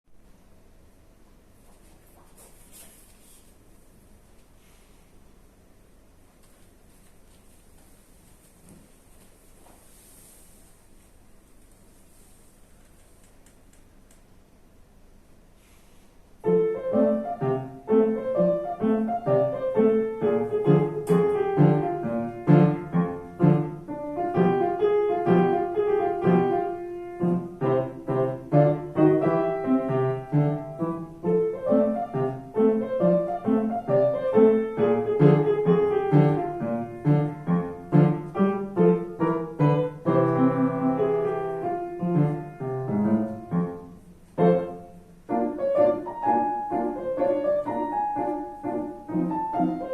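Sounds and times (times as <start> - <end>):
solo piano melody: 16.4 - 49.9.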